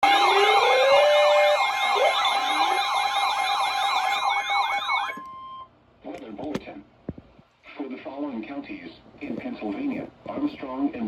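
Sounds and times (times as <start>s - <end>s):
electronic sirens yelping: 0.0s - 5.6s.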